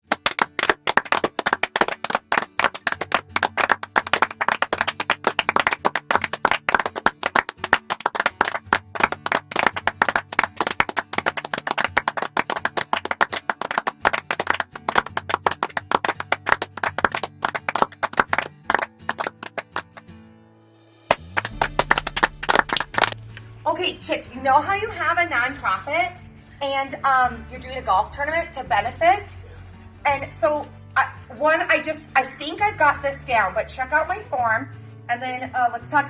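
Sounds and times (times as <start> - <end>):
crowd applauding: 0.0 - 20.1, 21.1 - 23.2
faint music: 21.3 - 36.0.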